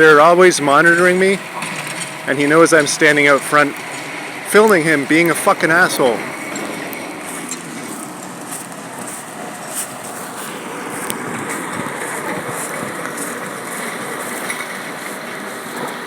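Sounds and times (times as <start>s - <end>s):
car engine running: 0.0s - 16.0s.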